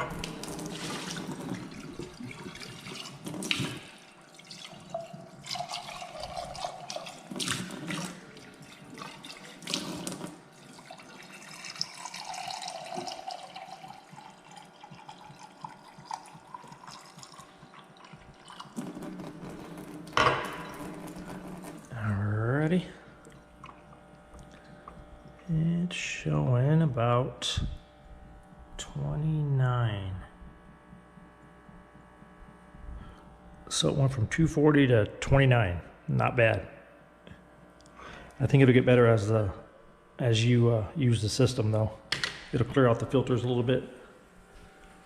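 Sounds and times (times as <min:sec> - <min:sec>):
water running into container: 0:00.0 - 0:25.5.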